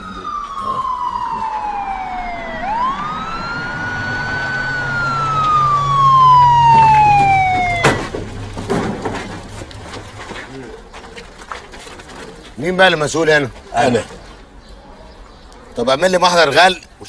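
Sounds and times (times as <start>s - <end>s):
police siren wailing: 0.0s - 9.5s
low engine hum: 0.3s - 10.3s.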